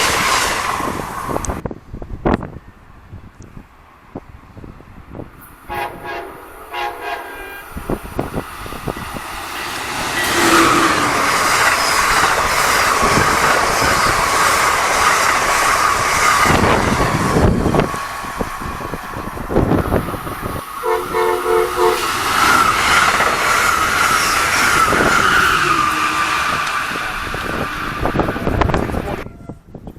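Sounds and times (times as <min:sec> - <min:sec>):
train passing with wheel rush: 0:00.0 - 0:29.9
wind buffeting microphone: 0:00.0 - 0:29.9
train whine: 0:05.1 - 0:29.6
train horn blasts: 0:05.6 - 0:08.2, 0:20.8 - 0:22.6, 0:27.4 - 0:29.8.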